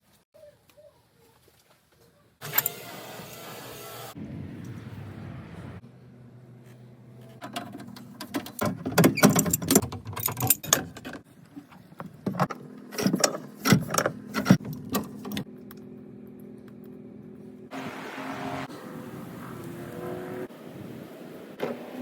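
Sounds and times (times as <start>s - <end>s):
metal clanks and knocks: 7.4s - 11.2s.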